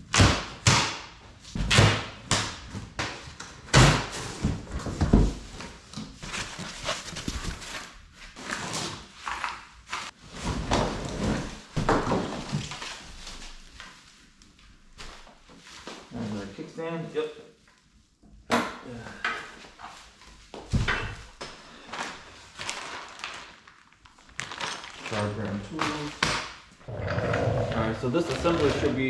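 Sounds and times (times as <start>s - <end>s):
packaging rustling: 6.1s - 8.7s, 22.0s - 25.4s
scraping: 6.2s - 8.0s, 26.8s - 29.0s.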